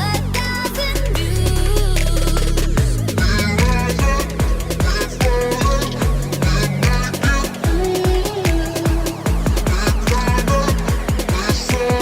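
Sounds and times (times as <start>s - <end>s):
electronic dance music: 0.0s - 12.0s
kick drums: 2.8s - 12.0s.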